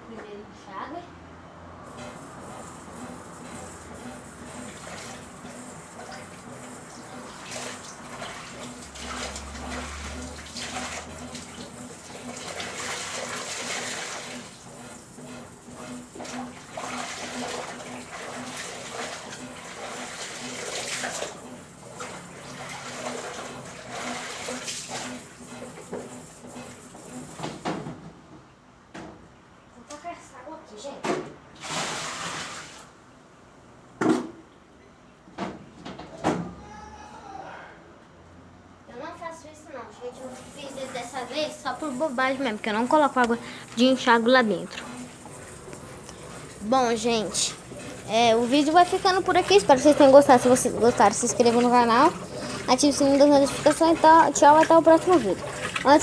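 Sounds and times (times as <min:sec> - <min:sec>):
water sloshing in washing machine: 0:01.8 - 0:28.3, 0:31.1 - 0:33.2, 0:39.8 - 0:56.0
low motor hum: 0:42.5 - 0:56.0.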